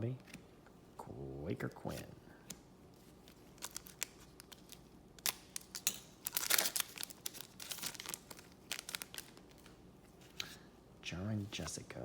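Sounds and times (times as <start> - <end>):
cards rustling: 2.4 - 10.6.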